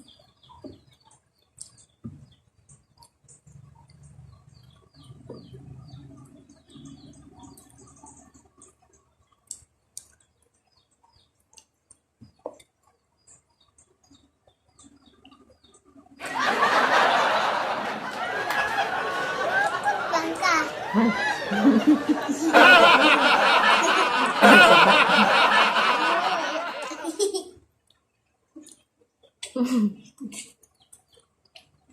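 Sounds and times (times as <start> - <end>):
bird chirps: 0.0 - 8.5
low murmur: 16.2 - 27.0.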